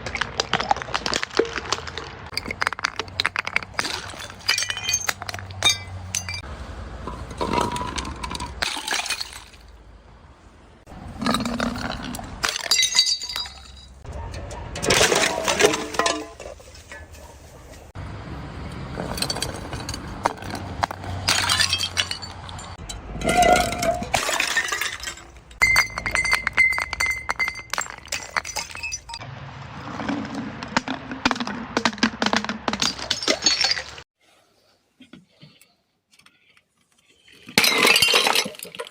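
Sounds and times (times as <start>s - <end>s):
glass smashing and crunching: 0.0s - 6.4s, 7.3s - 9.7s, 11.2s - 14.1s, 14.8s - 16.6s, 19.0s - 29.2s, 31.8s - 34.0s, 37.4s - 38.9s
glass shards clinking: 2.3s - 6.5s, 11.2s - 14.0s, 14.8s - 17.3s, 19.0s - 29.2s, 32.8s - 34.0s, 37.5s - 38.9s.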